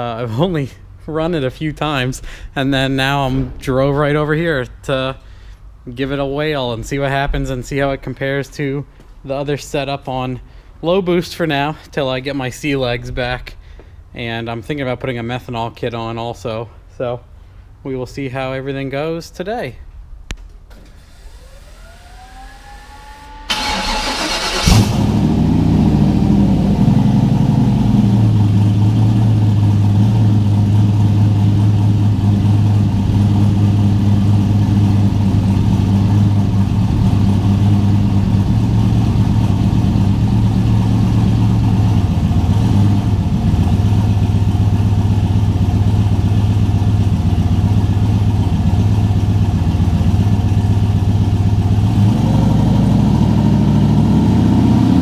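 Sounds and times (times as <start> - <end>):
engine idling: 20.9 - 55.0
starter cranking engine: 21.0 - 25.4.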